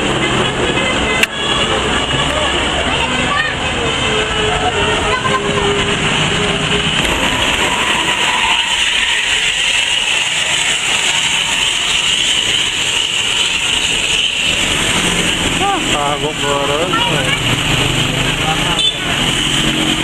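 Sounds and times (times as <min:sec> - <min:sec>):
multi-tone bus air horn: 0:00.6 - 0:07.2, 0:18.8 - 0:19.2.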